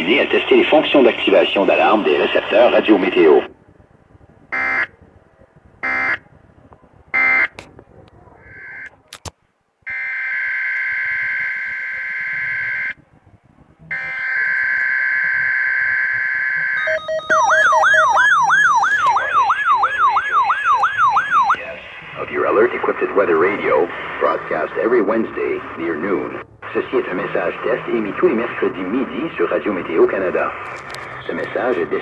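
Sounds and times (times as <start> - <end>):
long steady electronic tones: 9.9 - 13.0, 13.9 - 29.9
siren-like alarm gliding up: 13.9 - 21.7
data bursts: 16.6 - 21.6.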